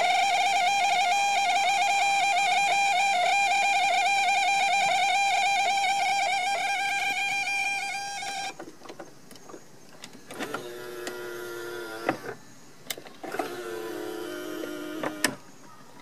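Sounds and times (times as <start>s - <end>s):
high-pitched wavering squeal: 0.0s - 8.6s
mirror fold motor whirring: 10.1s - 12.4s, 13.2s - 15.4s.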